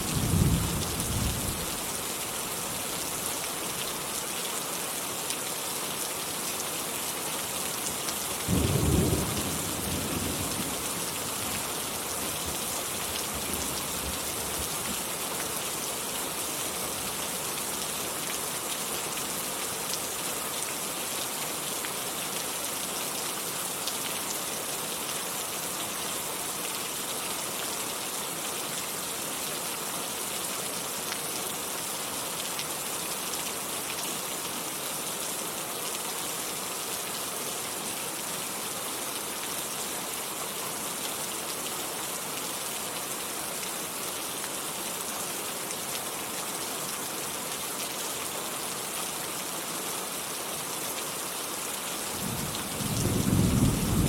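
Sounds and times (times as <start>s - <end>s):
heavy rain: 0.0s - 54.0s
thunder rumble: 52.2s - 54.0s.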